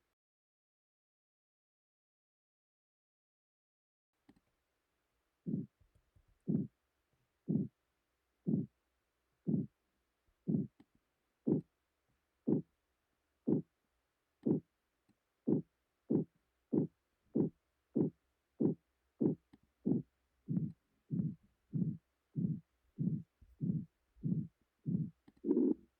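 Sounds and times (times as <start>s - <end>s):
low heartbeat-like pulses: 5.5s - 5.8s, 6.4s - 6.7s, 7.5s - 7.7s, 8.5s - 8.7s, 9.4s - 9.7s, 10.5s - 10.8s, 11.5s - 11.7s, 12.5s - 12.7s, 13.5s - 13.7s, 14.4s - 14.7s, 15.5s - 25.8s.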